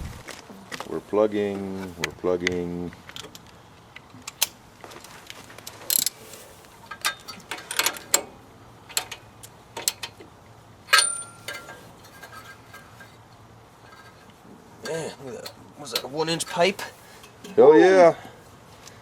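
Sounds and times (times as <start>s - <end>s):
ringing metal clank: 10.9s - 13.1s
metal hand tools clanking: 10.9s - 13.2s.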